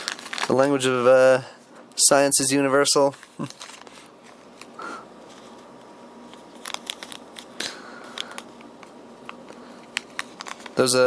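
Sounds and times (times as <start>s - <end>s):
packets crinkling and clicking: 0.0s - 0.9s, 3.0s - 5.6s, 6.3s - 11.0s.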